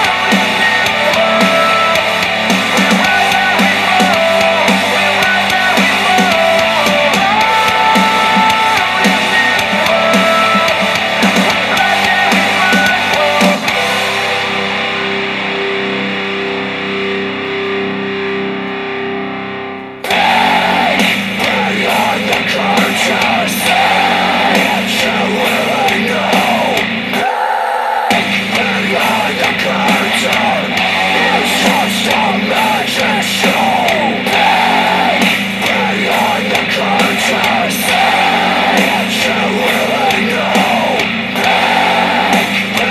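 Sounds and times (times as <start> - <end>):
rock music through speaker: 0.0 - 42.9.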